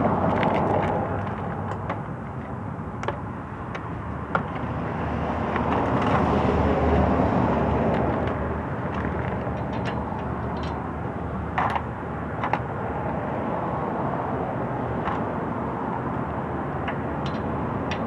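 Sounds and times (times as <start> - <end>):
metal tool clicks and clinks: 9.5 - 10.8, 17.2 - 18.0.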